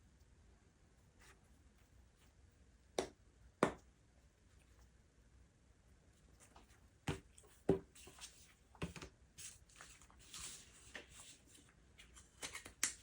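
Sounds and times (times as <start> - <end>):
soft rubbing and rustling: 6.2 - 12.8.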